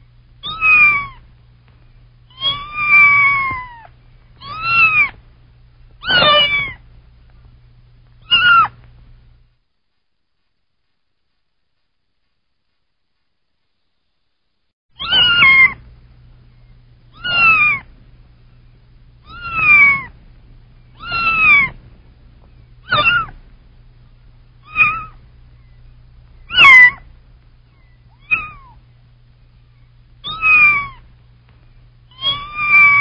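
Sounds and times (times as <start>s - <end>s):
faint low hum: 0.0s - 33.0s
kitten meowing: 0.4s - 1.2s, 2.3s - 5.2s, 6.0s - 6.8s, 8.2s - 8.8s, 15.0s - 15.8s, 17.1s - 17.9s, 19.2s - 20.1s, 21.0s - 21.8s, 22.8s - 23.4s, 24.6s - 25.2s, 26.5s - 27.0s, 27.7s - 28.8s, 30.2s - 31.0s, 32.1s - 33.0s.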